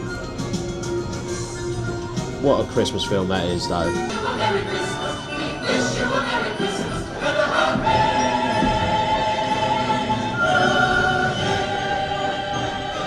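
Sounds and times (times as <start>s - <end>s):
choir singing held chords: 4.1s - 13.0s.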